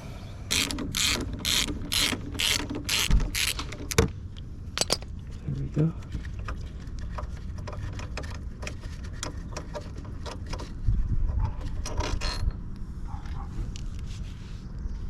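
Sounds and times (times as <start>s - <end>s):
socket ratchet clicking: 0.5s - 4.0s.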